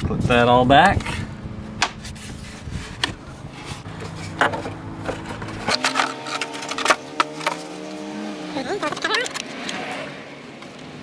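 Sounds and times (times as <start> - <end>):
plastic rubbing and scraping: 1.0 - 8.1.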